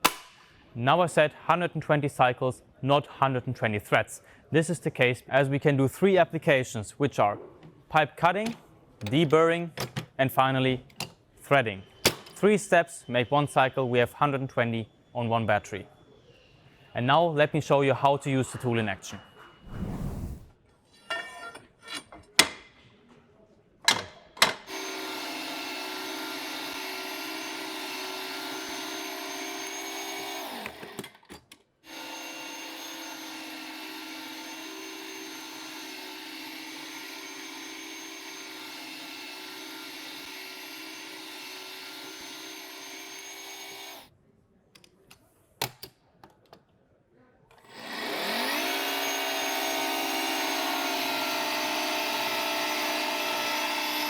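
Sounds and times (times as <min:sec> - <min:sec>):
tool knocks and clicks: 0:12.1 - 0:12.4
pipe threader motor running: 0:24.7 - 0:31.0, 0:31.9 - 0:44.1, 0:47.7 - 0:54.0.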